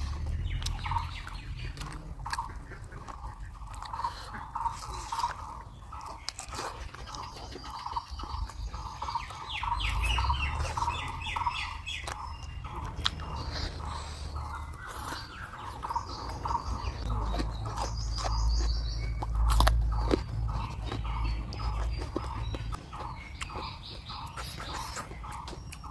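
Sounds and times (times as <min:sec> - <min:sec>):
low rumble: 0:00.0 - 0:04.0, 0:08.1 - 0:24.4
birds chirping: 0:00.0 - 0:25.9.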